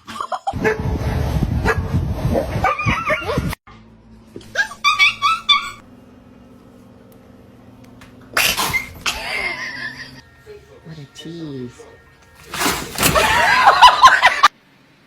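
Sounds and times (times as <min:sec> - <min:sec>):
dog yipping and whining: 0:08.4 - 0:09.1.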